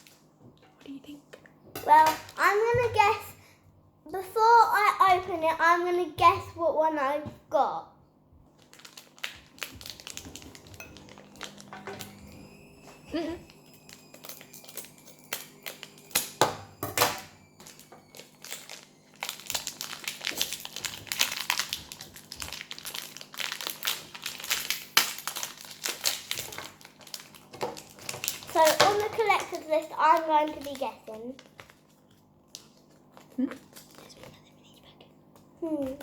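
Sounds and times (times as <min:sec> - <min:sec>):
packaging crinkling and rustling: 0:08.5 - 0:16.4, 0:17.3 - 0:34.4.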